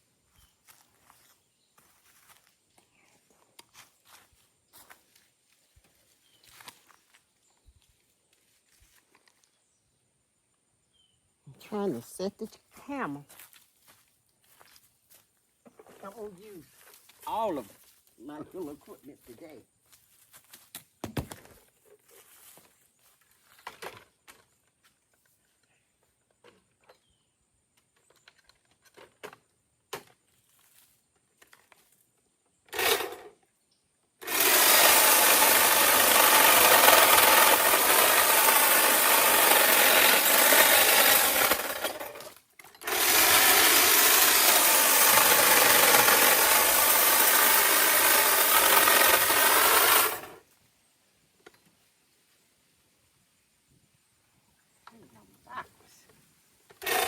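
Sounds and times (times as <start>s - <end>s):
small power saw cutting branches: 32.6s - 33.4s, 34.2s - 50.4s, 56.7s - 57.0s.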